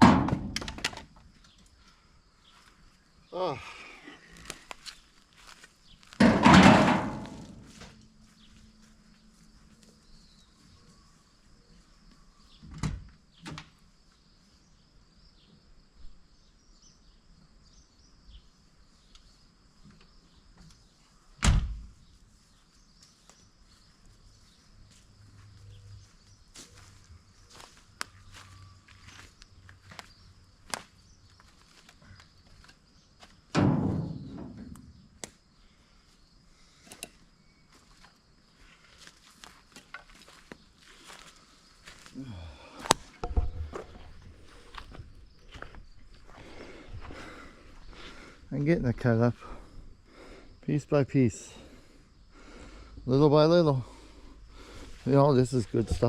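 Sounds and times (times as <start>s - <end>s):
wood clicks and snaps: 0.3s - 1.6s
heavy wood thud: 6.2s - 7.7s, 33.6s - 34.7s, 42.9s - 44.0s.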